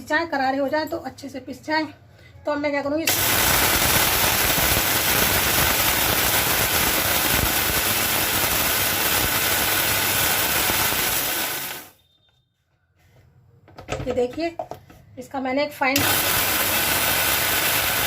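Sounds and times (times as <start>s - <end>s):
mixer grinder grinding spices: 3.1s - 11.9s, 16.0s - 18.0s.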